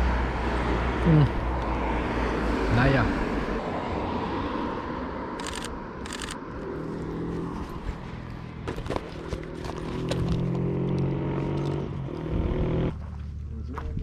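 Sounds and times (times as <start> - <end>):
outdoor background noise: 0.0 - 14.0
vehicle engine humming: 0.0 - 14.0
camera shutter clicks: 5.4 - 6.4.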